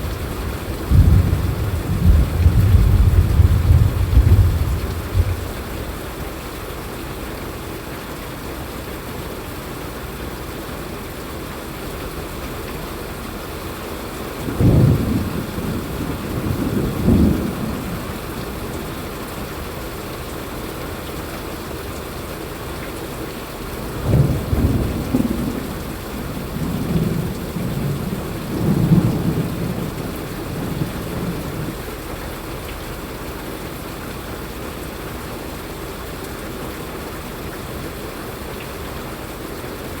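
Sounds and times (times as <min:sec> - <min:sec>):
thunder rumbling: 0:00.0 - 0:05.7, 0:14.5 - 0:18.9, 0:23.9 - 0:31.8
steady rain falling: 0:00.0 - 0:40.0.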